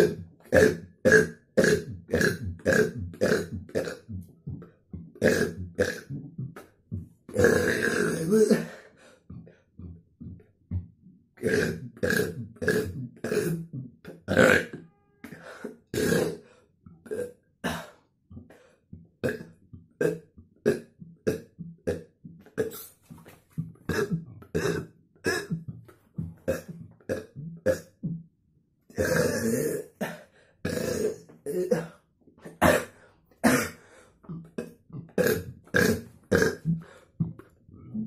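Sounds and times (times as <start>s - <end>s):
man burping: 0.0s - 4.4s, 5.0s - 6.6s, 7.3s - 8.8s, 11.4s - 14.8s, 15.9s - 16.4s, 17.0s - 18.0s, 19.2s - 22.8s, 23.8s - 28.2s, 28.9s - 37.4s.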